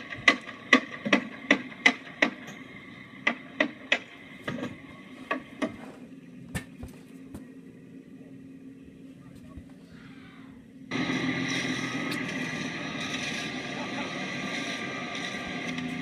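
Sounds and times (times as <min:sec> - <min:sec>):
hammering blows: 0:00.0 - 0:07.6
machine hum: 0:00.0 - 0:16.0.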